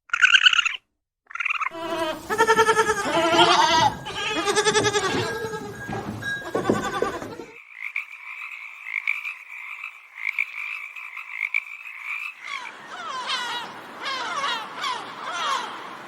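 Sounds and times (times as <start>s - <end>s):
frogs croaking: 0.1s - 16.0s
farm animal bleating: 1.7s - 7.6s.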